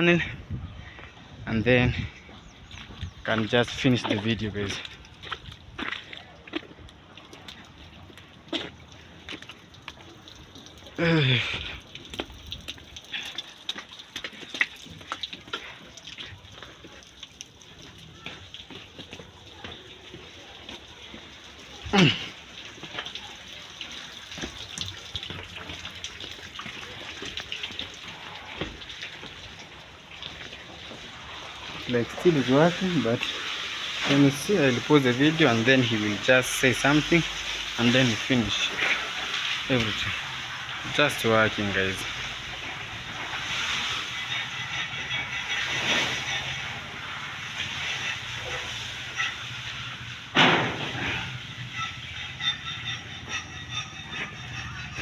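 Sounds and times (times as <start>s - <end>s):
water running and splashing: 2.1s - 55.0s
construction machinery engine humming: 38.6s - 55.0s.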